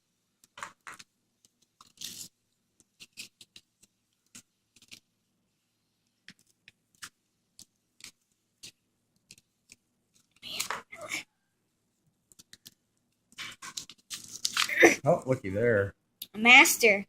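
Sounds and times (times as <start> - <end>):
paper wrapping rustling: 13.4 - 14.8.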